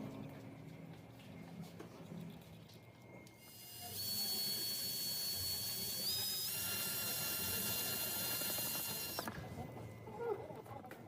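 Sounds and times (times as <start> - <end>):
high whistling tone: 3.4 - 9.3.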